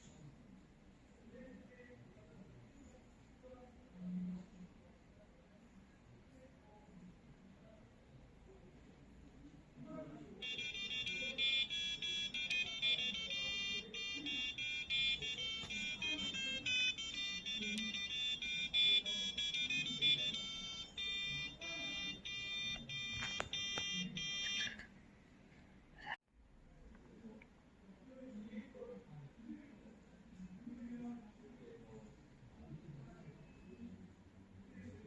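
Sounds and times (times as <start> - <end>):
alarm clock buzzer melody: 10.4 - 24.7.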